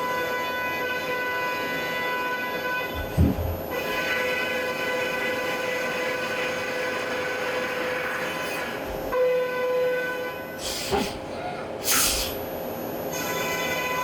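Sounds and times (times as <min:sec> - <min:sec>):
hiss of metal chips: 0:11.8 - 0:12.4.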